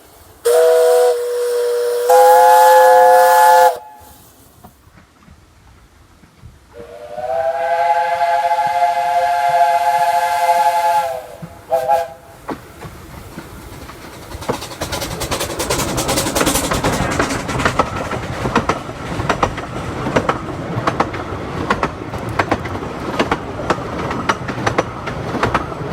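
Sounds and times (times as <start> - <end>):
train wheels clicking over rail joints: 0.0 - 6.7, 10.6 - 25.9
steam locomotive whistle: 0.4 - 4.3, 6.7 - 12.4.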